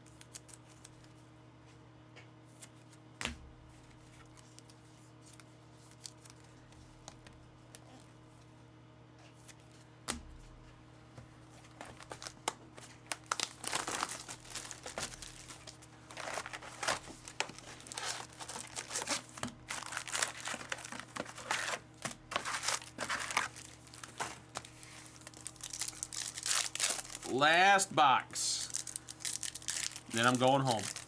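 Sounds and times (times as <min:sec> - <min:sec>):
plastic packaging crinkling and tearing: 0:04.2 - 0:06.6, 0:11.6 - 0:27.4, 0:28.6 - 0:31.0.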